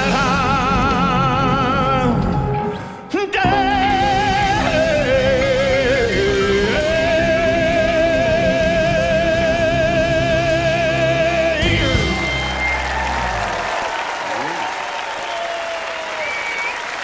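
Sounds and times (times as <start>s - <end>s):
man singing with vibrato: 0.0s - 12.7s
live band playing ballad: 0.0s - 13.8s.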